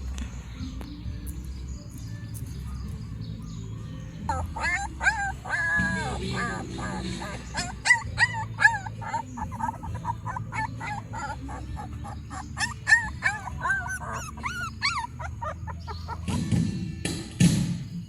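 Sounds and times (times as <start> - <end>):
dogs whimpering and yipping: 2.6 - 16.9.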